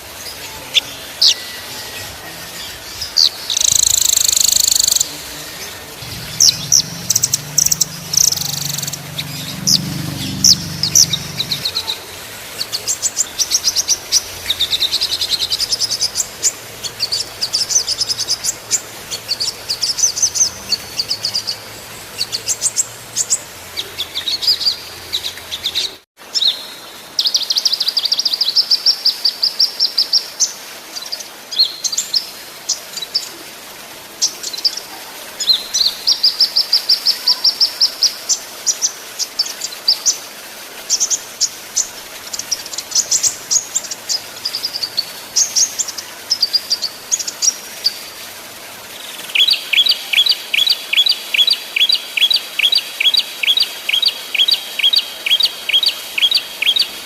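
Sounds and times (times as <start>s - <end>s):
songbirds singing rolling trills: 0.0s - 28.6s, 49.0s - 57.0s
repeated downward-slurred bird notes: 0.3s - 26.0s.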